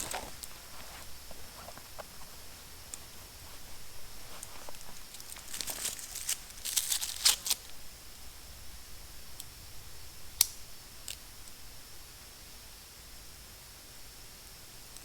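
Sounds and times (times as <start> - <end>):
crinkling and rustling: 0.0 - 7.7.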